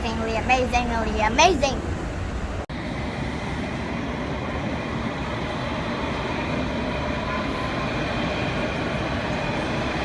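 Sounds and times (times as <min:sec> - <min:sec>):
moving vehicle rumble: 0:00.0 - 0:05.8.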